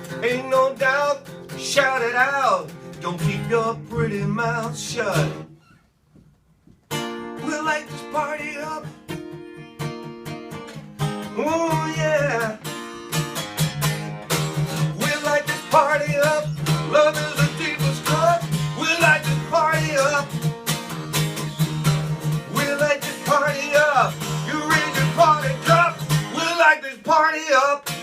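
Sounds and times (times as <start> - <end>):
man singing wordless vocals: 0.0 - 5.5, 7.4 - 9.0, 11.3 - 12.6, 14.8 - 20.4, 22.2 - 28.0
strummed acoustic guitar: 0.0 - 5.8, 6.9 - 28.0.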